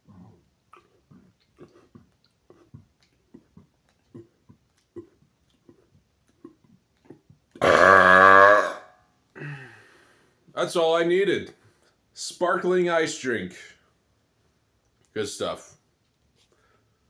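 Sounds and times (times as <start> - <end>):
man burping: 7.6 - 9.7.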